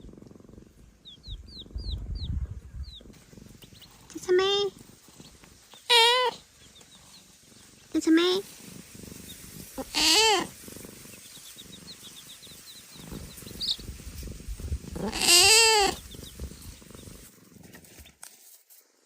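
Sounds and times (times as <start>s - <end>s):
cat purring: 0.0s - 19.0s
high chick peeps: 1.0s - 17.3s
cat meowing: 5.9s - 6.4s, 9.8s - 10.5s, 15.0s - 16.0s.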